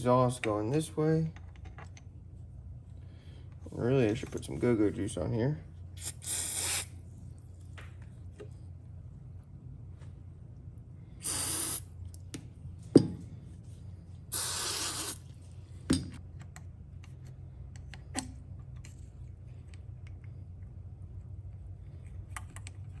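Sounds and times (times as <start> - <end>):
aerosol can spraying: 6.0 - 6.9, 11.2 - 11.9, 14.3 - 15.2.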